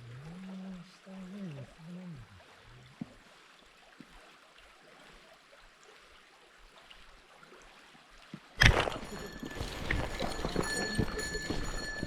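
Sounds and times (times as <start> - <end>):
stream rushing: 8.6 - 12.0.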